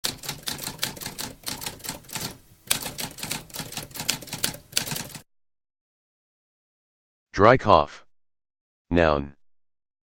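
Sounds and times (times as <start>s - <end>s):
typewriter keys clacking: 0.0s - 5.2s.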